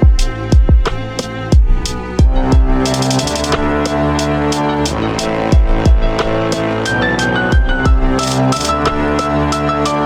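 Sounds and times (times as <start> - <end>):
deep bass kick hits: 0.0 - 3.8, 5.0 - 6.5, 7.5 - 8.2
fast hi-hat roll: 0.0 - 10.0
held synth notes: 1.4 - 10.0.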